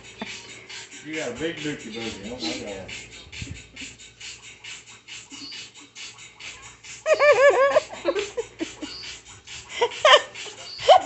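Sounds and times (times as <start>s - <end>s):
quick tapping beat: 0.0s - 11.0s
high-pitched laughter: 6.9s - 11.0s.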